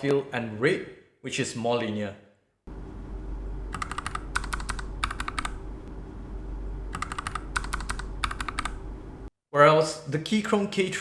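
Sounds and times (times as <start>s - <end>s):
steady low hum: 2.7s - 9.3s
mechanical keyboard typing: 3.7s - 5.6s, 6.9s - 8.8s.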